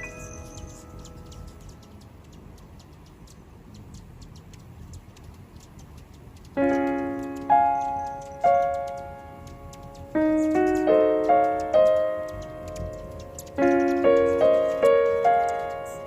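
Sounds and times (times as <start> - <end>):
piano chords ringing: 0.0 - 2.1, 6.6 - 16.0
light even ticking: 0.0 - 16.0.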